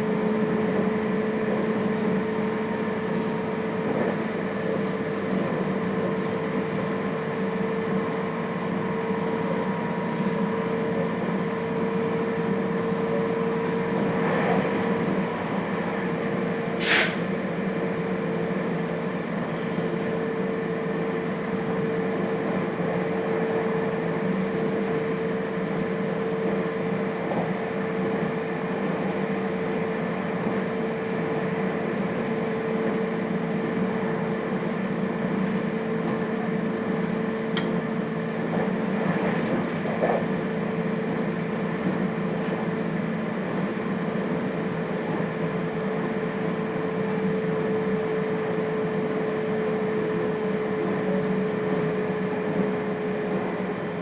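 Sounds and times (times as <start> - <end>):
train car rumble: 0.1 - 54.0
sharp high click or squeak: 16.8 - 17.3.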